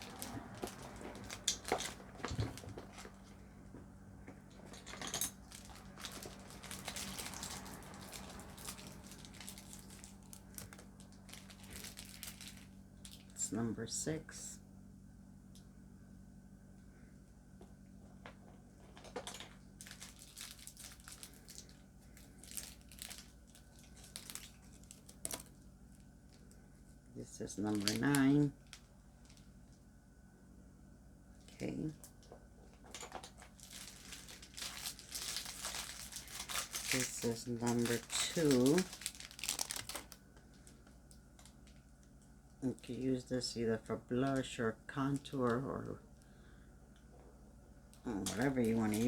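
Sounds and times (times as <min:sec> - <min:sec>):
plastic packaging rustling: 0:00.0 - 0:13.4, 0:18.1 - 0:26.6, 0:27.5 - 0:29.6, 0:32.1 - 0:43.0, 0:48.1 - 0:49.0
faint low hum: 0:00.0 - 0:49.0.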